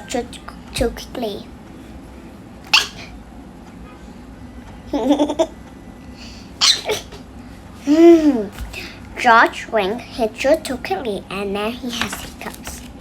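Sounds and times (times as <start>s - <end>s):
cartoon character hiccuping: 6.6s - 7.2s.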